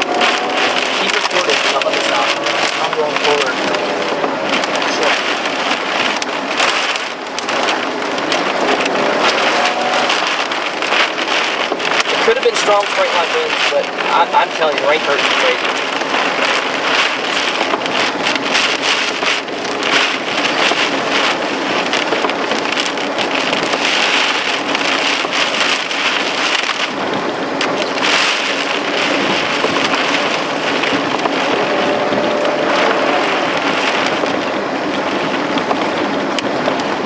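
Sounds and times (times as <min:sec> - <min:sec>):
heavy rain beating on vehicle: 0:00.0 - 0:37.0.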